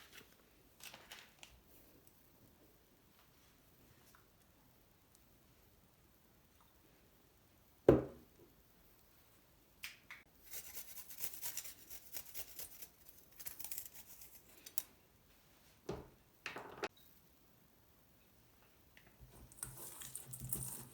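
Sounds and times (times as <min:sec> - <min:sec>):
crisp scratchy strokes: 0:10.4 - 0:14.6.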